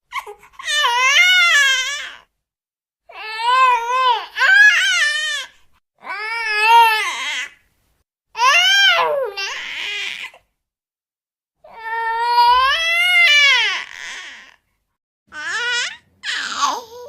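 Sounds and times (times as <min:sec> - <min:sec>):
infant crying: 0:00.1 - 0:02.3, 0:03.1 - 0:07.6, 0:08.4 - 0:10.5, 0:11.6 - 0:14.6, 0:15.3 - 0:17.0.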